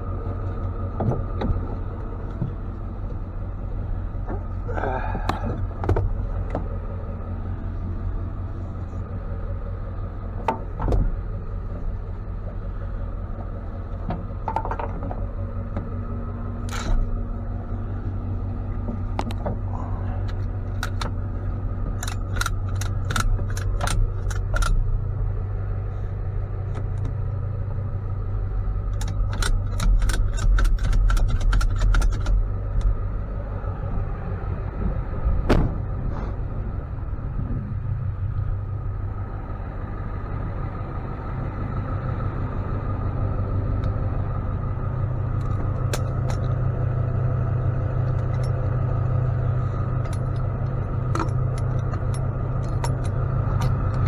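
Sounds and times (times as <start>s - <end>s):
vehicle engine and road rumble: 0.0s - 54.0s
rapid rattling clicks: 16.6s - 25.3s, 28.7s - 33.2s, 45.3s - 46.7s, 49.5s - 54.0s.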